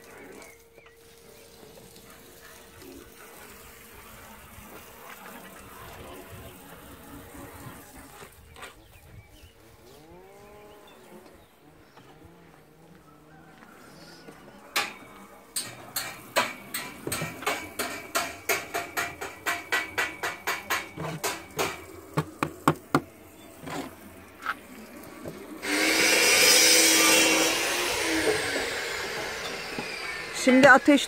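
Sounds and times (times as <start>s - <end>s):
power tool running: 20.7s - 31.0s.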